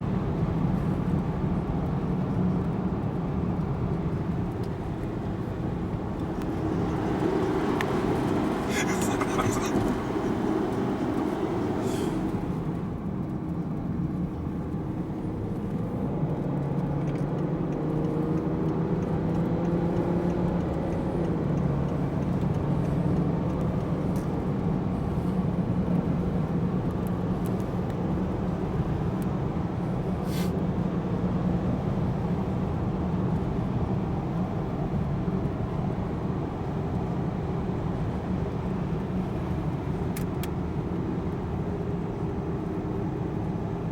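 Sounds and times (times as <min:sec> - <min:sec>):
road noise: 0:00.0 - 0:43.9
car engine drone: 0:02.3 - 0:30.2.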